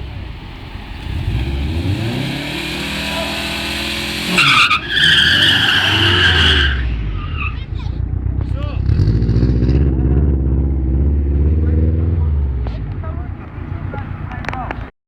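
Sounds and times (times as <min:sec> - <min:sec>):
car engine revving: 0:00.0 - 0:14.9
tyre squeal: 0:02.7 - 0:07.9.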